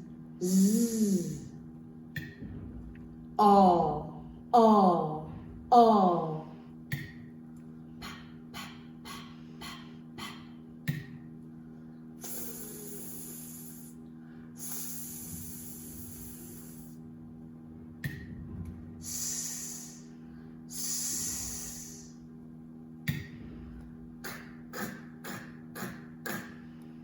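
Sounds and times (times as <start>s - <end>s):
faint steady hum: 0.0s - 27.0s
woman making hissing sounds: 0.4s - 1.5s, 12.2s - 14.0s, 14.6s - 17.0s, 19.0s - 20.1s, 20.7s - 22.2s.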